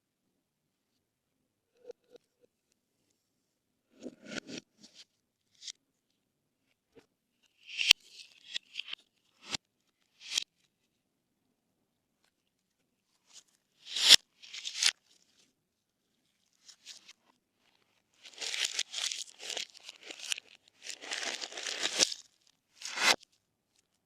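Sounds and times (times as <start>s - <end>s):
slime crackling and tearing: 18.3s - 23.1s.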